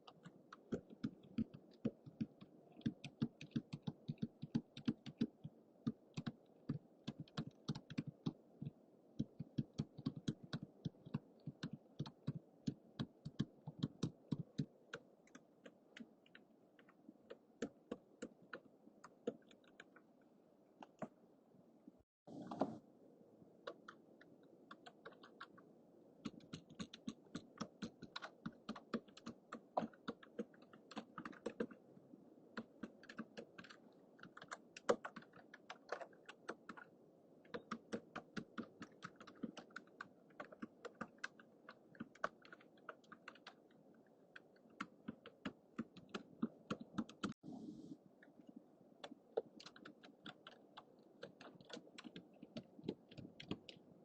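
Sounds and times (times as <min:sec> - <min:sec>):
microphone hiss: 0:47.4 - 0:48.9.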